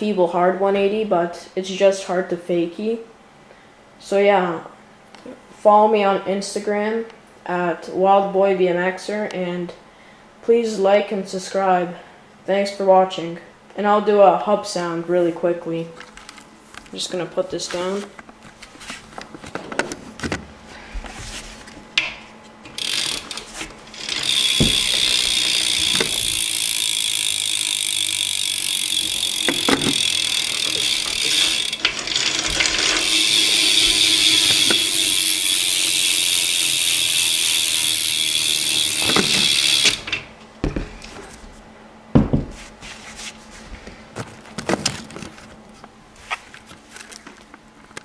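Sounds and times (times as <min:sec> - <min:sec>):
bicycle hub ratcheting buzz: 0:22.6 - 0:40.3
thumps: 0:24.4 - 0:26.4.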